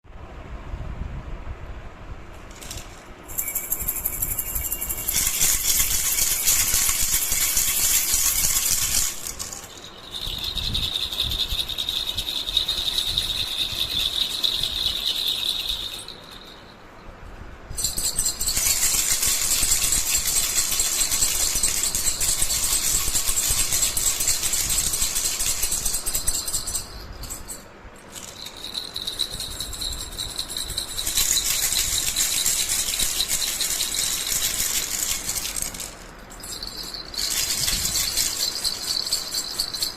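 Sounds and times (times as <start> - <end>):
baby rattle shaken: 2.4 - 39.9
high ringing tone: 3.3 - 5.3, 36.2 - 39.9.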